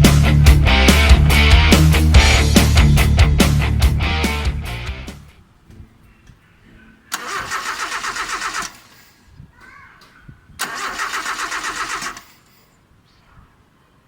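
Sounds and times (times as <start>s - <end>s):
starter motor cranking engine: 7.1s - 9.2s, 10.6s - 12.6s.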